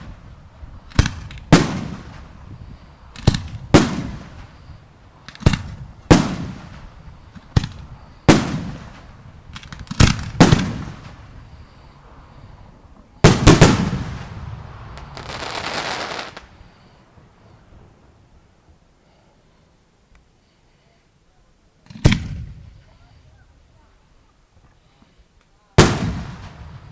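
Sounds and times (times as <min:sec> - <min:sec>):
fireworks bangs echoing: 0:00.0 - 0:11.6, 0:13.2 - 0:18.1, 0:25.8 - 0:26.9
fireworks hiss: 0:10.1 - 0:18.1.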